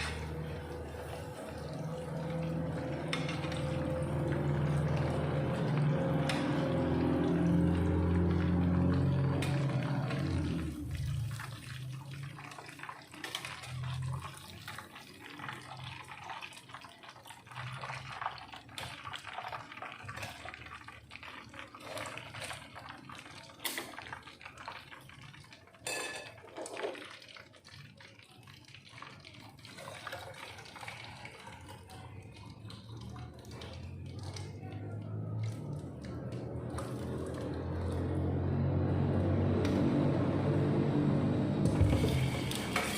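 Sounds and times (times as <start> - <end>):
pots and dishes clinking: 25.8 - 27.0.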